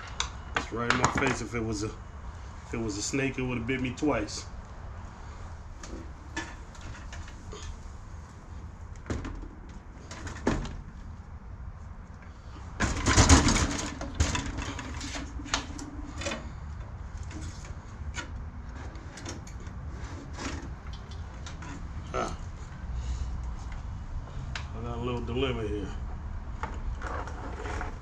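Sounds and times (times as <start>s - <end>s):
rustling and clatter: 5.8s - 11.2s, 12.2s - 22.8s, 26.6s - 28.0s
clicks and knocks of parts: 12.0s - 19.8s.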